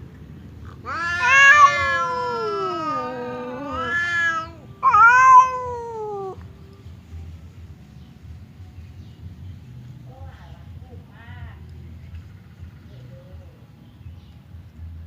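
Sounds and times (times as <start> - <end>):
cat yowling: 0.7 - 6.4.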